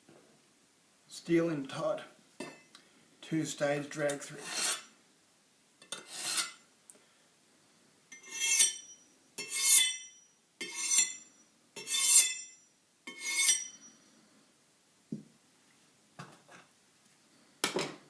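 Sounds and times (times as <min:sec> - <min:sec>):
knife drawn through sharpener: 0:06.0 - 0:06.6, 0:08.2 - 0:08.8, 0:11.8 - 0:12.4.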